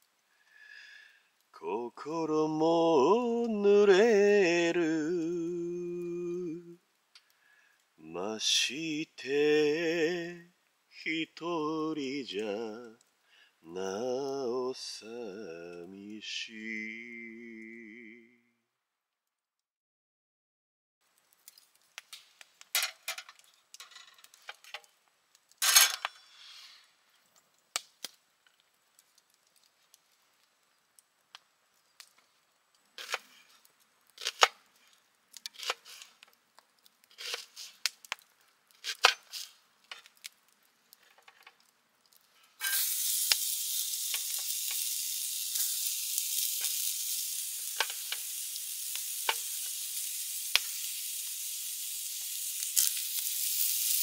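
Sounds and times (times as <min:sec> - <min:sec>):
food sizzling in hot pan: 0:32.9 - 0:33.5, 0:37.1 - 0:38.1, 0:42.4 - 0:54.0.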